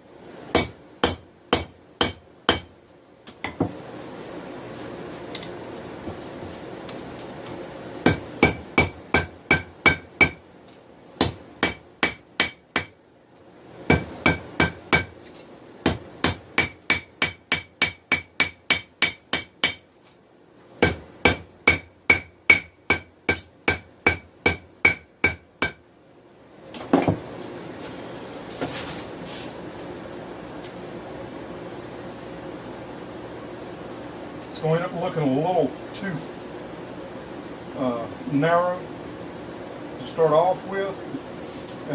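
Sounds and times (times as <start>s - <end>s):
hammer striking steel on anvil: 0.6s - 2.7s, 8.1s - 10.4s, 13.9s - 15.1s, 15.8s - 19.8s, 20.8s - 25.8s.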